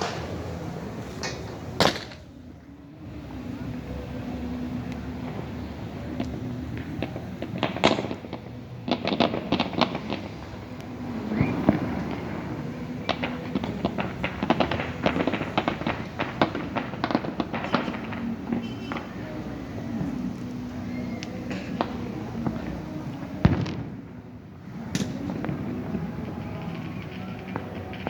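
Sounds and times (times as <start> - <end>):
fireworks cracking and popping: 0.0 - 2.6, 3.2 - 28.0.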